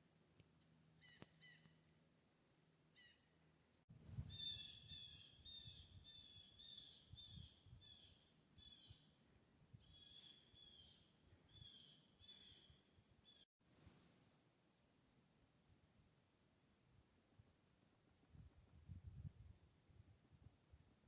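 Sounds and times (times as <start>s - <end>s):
small bird short high calls: 1.0s - 1.8s, 3.0s - 3.2s, 4.2s - 9.1s, 9.8s - 13.5s.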